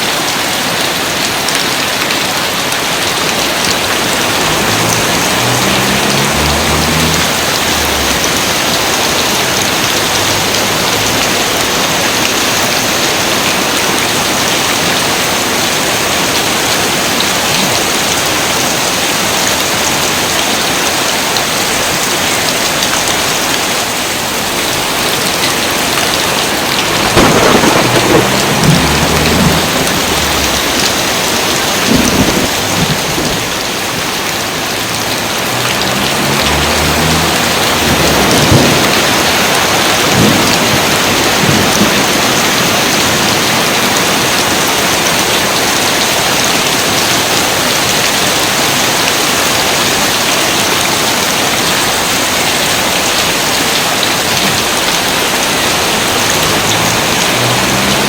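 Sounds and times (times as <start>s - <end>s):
heavy rain: 0.0s - 58.0s
thunder rumbling: 3.4s - 14.4s, 24.6s - 43.6s.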